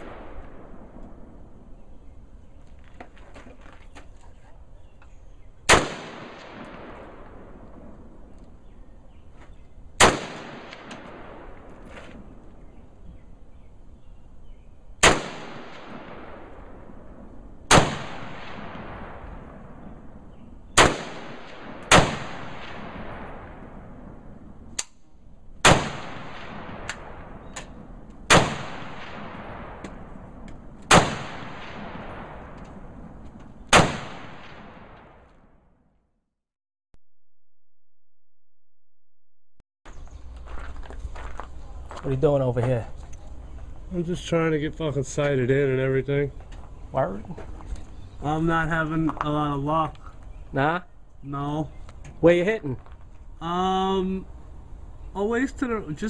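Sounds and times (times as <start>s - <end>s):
rifle shots with echo: 0.0s - 1.7s, 5.7s - 8.3s, 10.0s - 12.4s, 15.0s - 25.0s, 25.6s - 35.5s.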